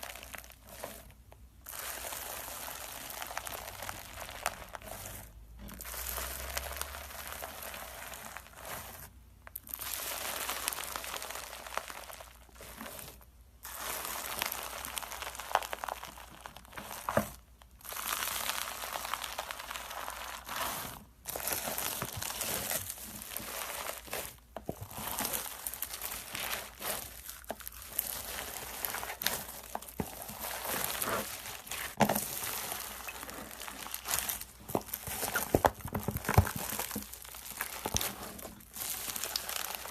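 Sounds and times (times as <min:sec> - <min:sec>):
slime crackling and popping: 0:00.0 - 0:39.9.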